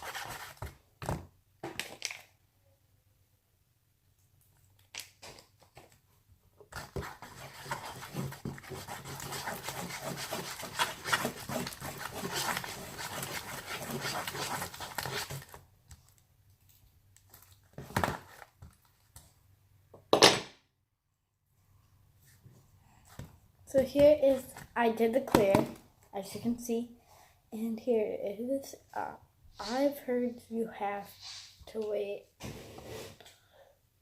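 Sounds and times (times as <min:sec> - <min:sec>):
sticky slime rubbing and crackling: 0:07.1 - 0:15.6.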